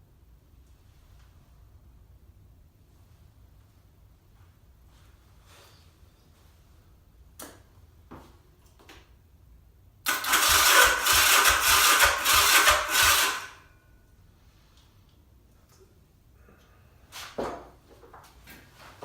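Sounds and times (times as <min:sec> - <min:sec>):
electric starter cranking engine: 0:10.0 - 0:13.6.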